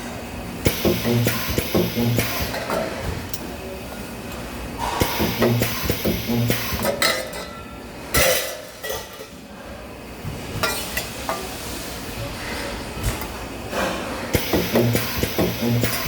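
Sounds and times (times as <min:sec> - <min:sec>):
spot welder electrical hum: 0:00.0 - 0:09.2, 0:14.3 - 0:16.0
loud metallic strike: 0:04.8 - 0:06.9.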